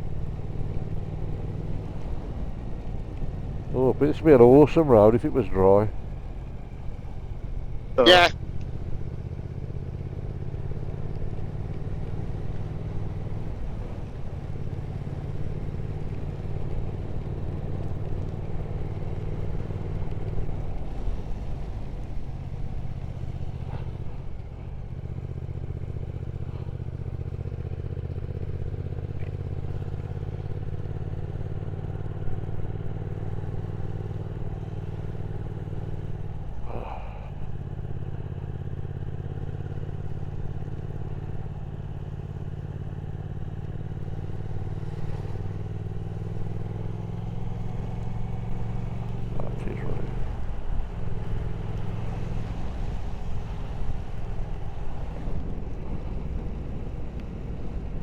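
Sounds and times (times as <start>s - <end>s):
motorcycle engine running: 0.0s - 58.0s.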